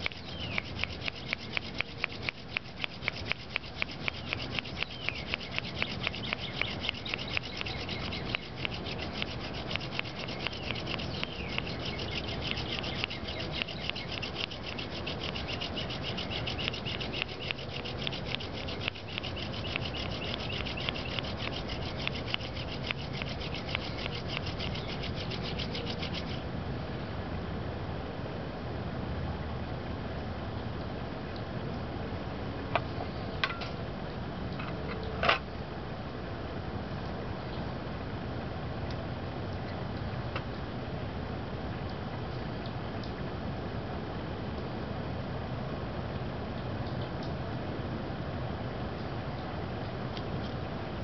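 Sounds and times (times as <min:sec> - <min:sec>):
hand drill ticks: 0:00.0 - 0:26.4
wood rubbing on wood with squeak: 0:00.0 - 0:26.4.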